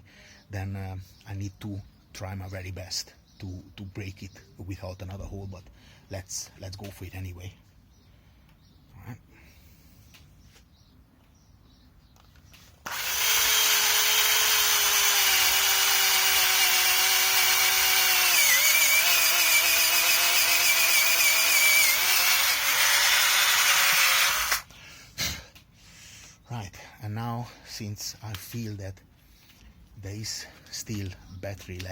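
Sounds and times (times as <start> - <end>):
cordless drill boring through wood: 12.8 - 24.7.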